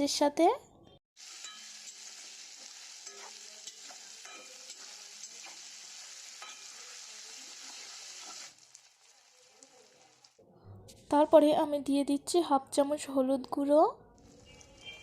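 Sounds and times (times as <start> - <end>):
onions sizzling in hot oil: 1.2 - 10.4
spoon scraping a pan: 1.3 - 7.0, 14.2 - 15.0.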